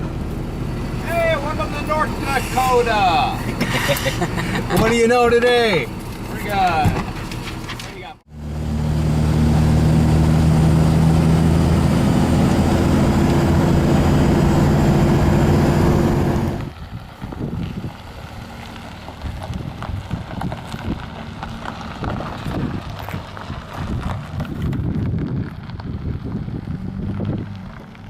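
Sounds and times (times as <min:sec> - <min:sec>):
truck engine and road drone: 0:00.0 - 0:28.0
wind noise: 0:09.6 - 0:28.0.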